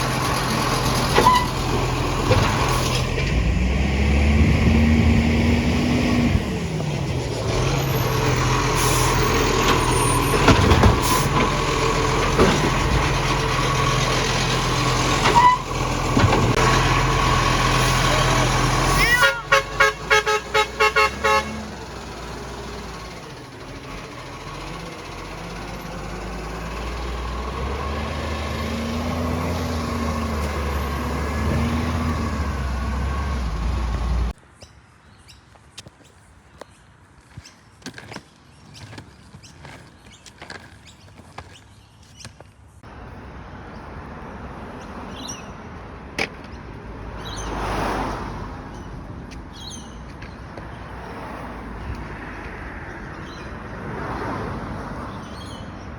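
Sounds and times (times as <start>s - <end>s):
garbage truck engine rumbling: 0.0s - 34.4s
horn toots: 18.0s - 21.9s.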